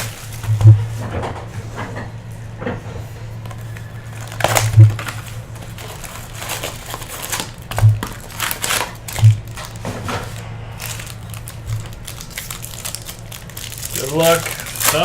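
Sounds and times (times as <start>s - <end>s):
card packaging crinkling: 0.0s - 0.6s, 3.5s - 15.0s.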